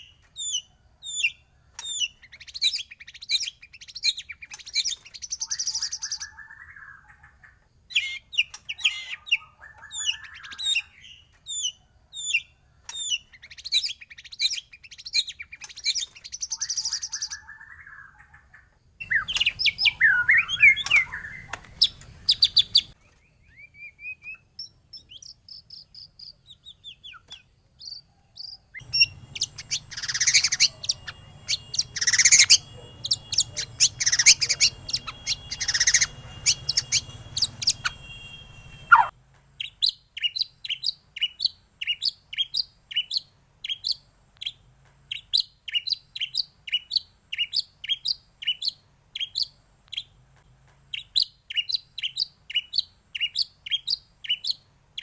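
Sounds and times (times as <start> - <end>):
songbirds chirping and whistling: 0.0 - 55.0
steady low hiss: 18.6 - 55.0.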